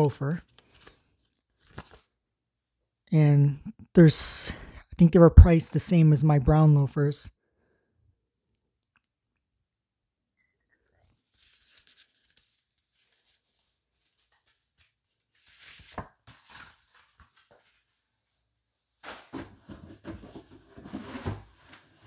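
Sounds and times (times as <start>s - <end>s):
paper and cardboard rustling: 0.4s - 2.1s, 11.0s - 18.0s, 19.0s - 22.0s
packaging scraping: 19.1s - 22.0s.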